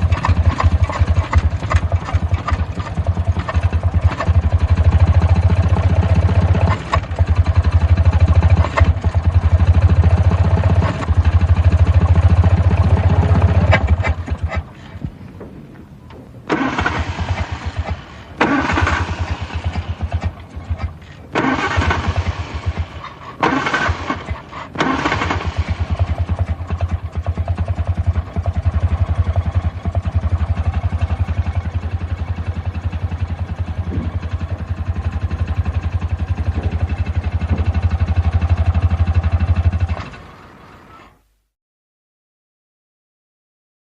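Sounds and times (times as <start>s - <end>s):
engine cranking: 0.0s - 41.2s
car engine running: 25.8s - 39.9s.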